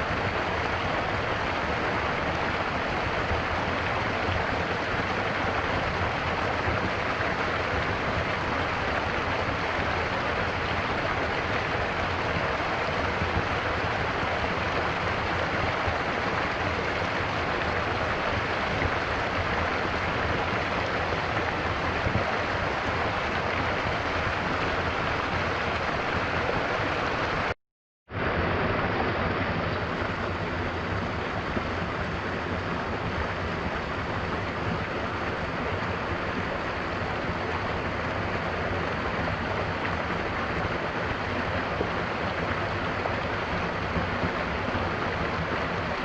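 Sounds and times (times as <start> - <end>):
stream flowing: 0.0 - 46.0.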